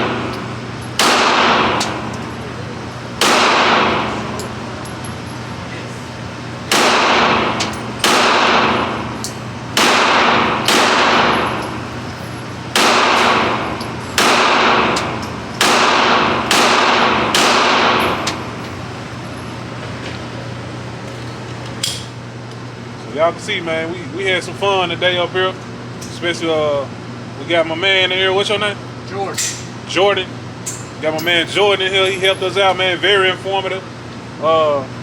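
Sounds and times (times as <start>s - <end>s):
gunshots with echoing tail: 1.0s - 2.0s, 3.2s - 4.4s, 6.7s - 9.2s, 9.8s - 11.9s, 12.7s - 18.5s.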